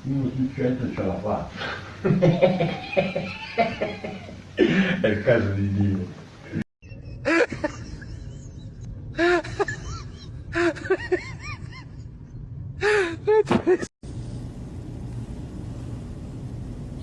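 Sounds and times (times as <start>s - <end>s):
steady low rumble: 7.6s - 13.0s, 14.0s - 17.0s.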